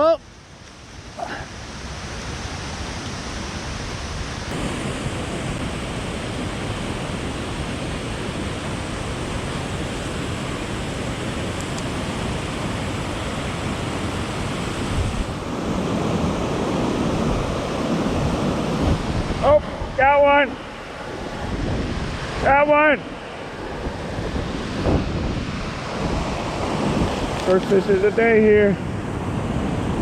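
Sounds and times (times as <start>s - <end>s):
river water rushing over falls: 0.0s - 30.0s
wind buffeting microphone: 3.7s - 20.1s, 21.0s - 28.2s.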